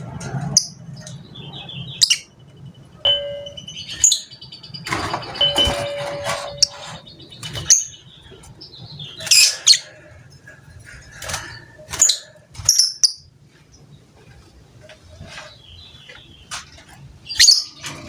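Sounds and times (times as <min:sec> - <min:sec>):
bird shrill chirps: 0:03.1 - 0:08.1.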